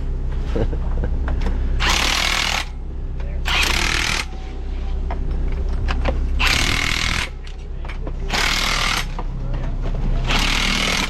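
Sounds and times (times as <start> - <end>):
engine droning: 0.0 - 11.0
hammering power tool rattling: 1.8 - 2.8, 3.5 - 4.3, 6.4 - 7.6, 8.2 - 9.2, 10.2 - 11.0.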